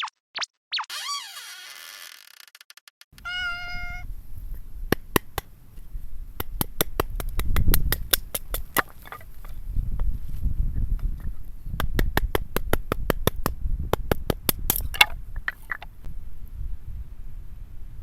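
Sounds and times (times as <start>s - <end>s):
cat meowing: 3.2s - 4.1s.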